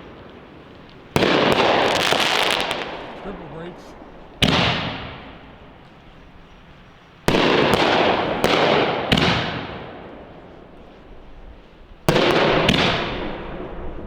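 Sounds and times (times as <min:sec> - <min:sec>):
firework shells bursting: 0:00.0 - 0:06.1, 0:07.2 - 0:11.0.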